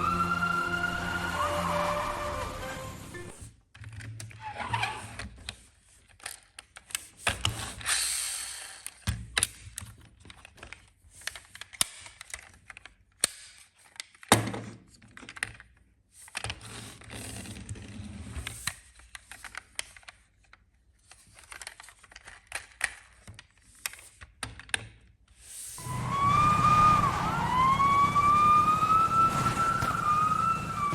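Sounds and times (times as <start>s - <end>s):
toy cars clicking and tapping: 5.4s - 17.6s, 18.4s - 25.2s
toy cars scraping: 16.2s - 19.6s, 25.4s - 30.9s.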